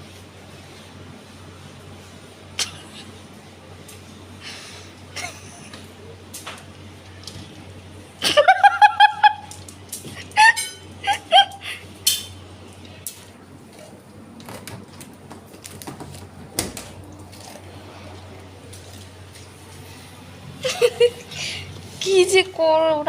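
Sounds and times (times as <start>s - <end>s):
person giggling: 5.2s - 5.8s, 8.2s - 9.5s, 10.1s - 11.9s, 20.6s - 21.7s.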